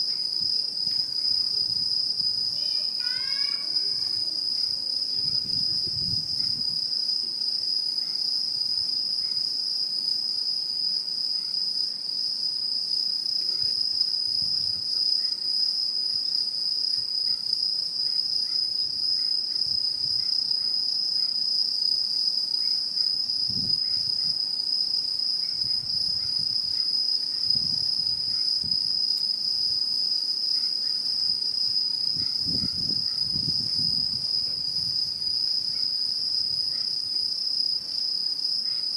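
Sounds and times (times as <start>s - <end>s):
fainter higher insect trills: 0.0s - 6.9s, 17.2s - 38.9s
insects trilling: 0.0s - 38.9s.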